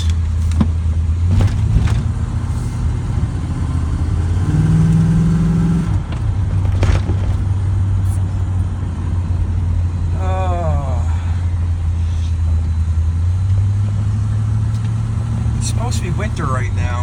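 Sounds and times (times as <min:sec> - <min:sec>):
truck engine and road noise: 0:00.0 - 0:17.0
short knocks or rattles: 0:06.0 - 0:07.8.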